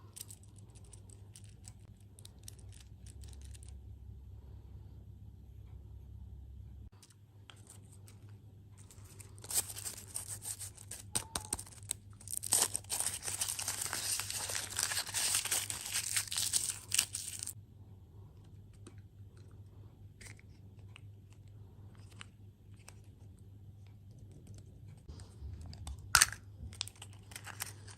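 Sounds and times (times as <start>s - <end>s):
packaging tearing and crumpling: 8.9s - 17.6s.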